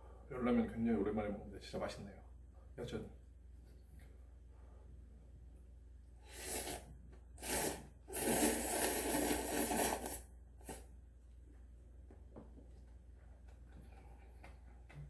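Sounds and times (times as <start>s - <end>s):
noodles being slurped: 6.3s - 10.9s.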